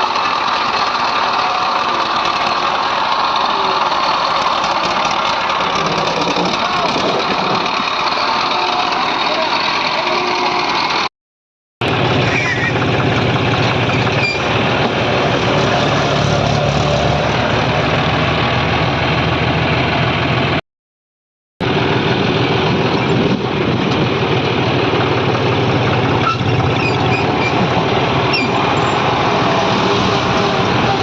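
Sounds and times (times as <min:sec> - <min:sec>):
diesel engine running: 0:00.0 - 0:11.1, 0:11.8 - 0:20.6, 0:21.6 - 0:31.0.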